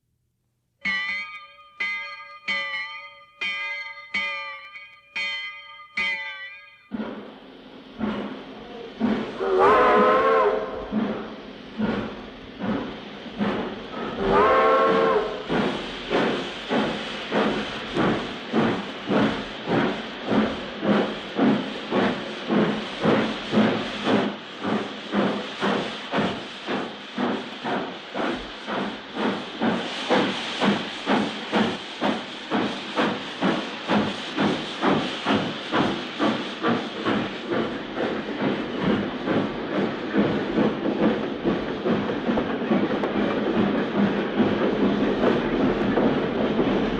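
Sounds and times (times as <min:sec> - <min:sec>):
steam hissing: 0:01.8 - 0:46.9
locomotive exhaust chuffs: 0:06.9 - 0:46.9
steam locomotive whistle: 0:09.4 - 0:10.9, 0:14.1 - 0:15.6.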